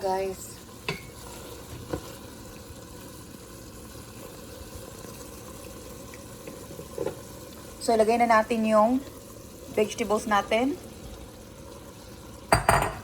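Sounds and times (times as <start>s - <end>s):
pasta bubbling in a pan: 0.0s - 13.0s.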